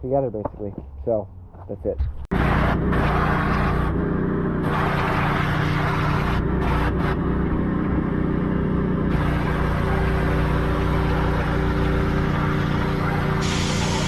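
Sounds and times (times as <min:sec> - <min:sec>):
pressure washer motor hum: 0:02.3 - 0:14.0
blasting attachment spraying hiss: 0:12.3 - 0:14.0.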